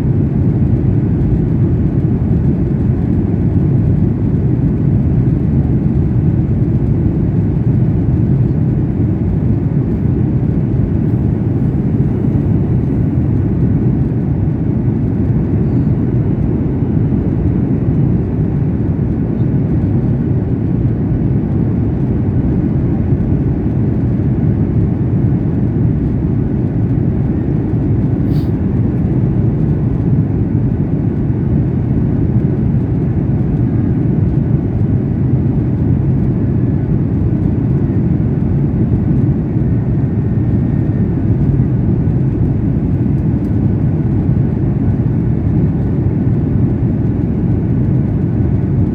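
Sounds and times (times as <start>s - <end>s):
jet engines rumbling: 0.0s - 48.9s
rushing air: 28.2s - 28.7s.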